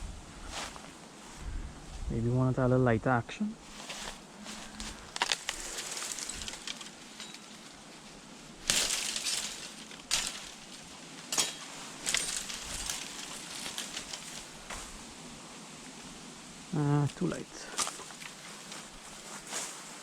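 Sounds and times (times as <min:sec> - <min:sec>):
bamboo rattle: 0:03.7 - 0:15.0, 0:17.0 - 0:20.0
bamboo stalks clacking: 0:03.7 - 0:15.0, 0:17.1 - 0:19.8.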